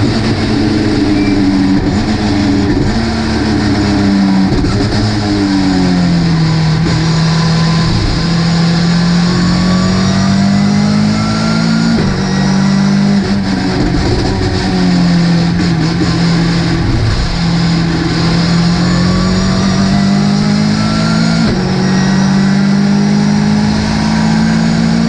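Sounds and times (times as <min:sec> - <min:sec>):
race car engine under load: 0:00.0 - 0:25.0.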